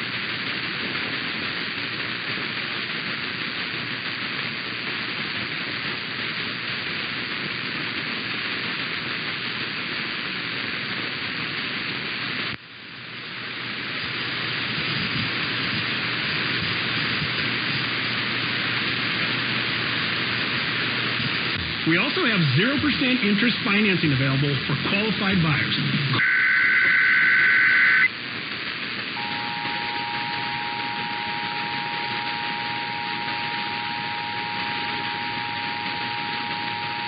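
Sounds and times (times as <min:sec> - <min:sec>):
radio static hiss: 0:00.0 - 0:37.0.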